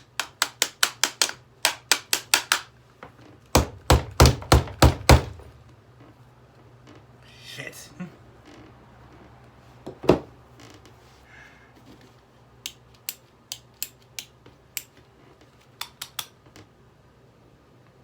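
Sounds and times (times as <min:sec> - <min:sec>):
loud knock: 0:03.6 - 0:05.5.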